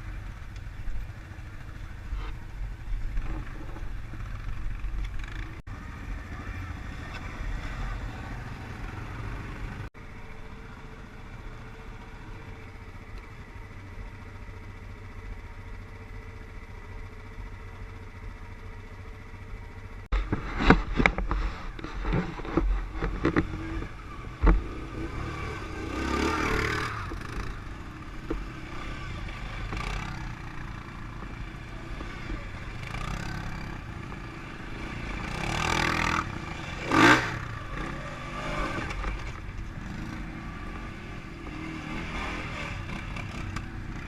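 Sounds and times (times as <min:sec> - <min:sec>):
atv engine running: 0:00.0 - 0:44.0.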